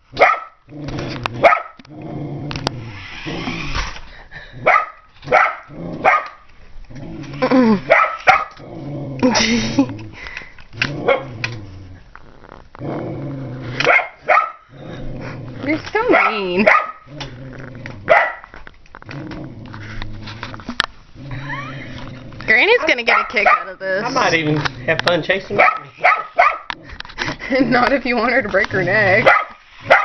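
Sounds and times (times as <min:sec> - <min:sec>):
dog barking: 0:00.2 - 0:00.6, 0:01.4 - 0:01.8, 0:04.6 - 0:06.4, 0:07.9 - 0:08.6, 0:13.8 - 0:14.6, 0:16.1 - 0:17.1, 0:18.1 - 0:18.5, 0:22.7 - 0:24.3, 0:25.6 - 0:26.7, 0:29.2 - 0:30.0
dog growling: 0:00.7 - 0:28.1.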